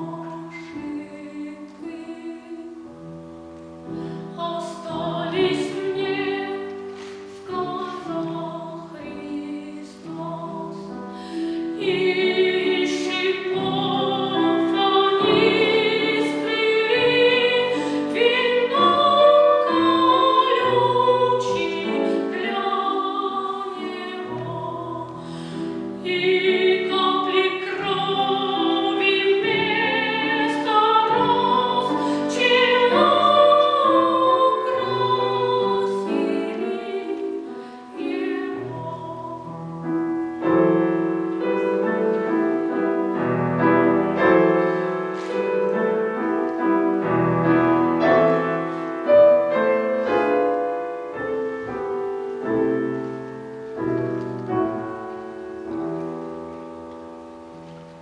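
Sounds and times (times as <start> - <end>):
piano: 0.0 - 58.0
child singing with vibrato: 26.0 - 39.5.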